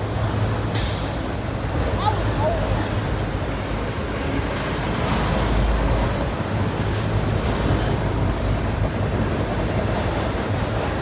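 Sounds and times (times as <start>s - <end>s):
train passing with rumble: 0.0s - 11.0s.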